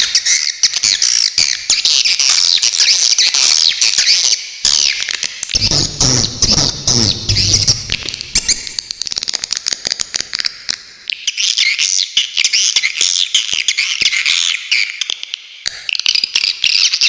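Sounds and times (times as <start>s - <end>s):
low hum: 5.6s - 8.8s.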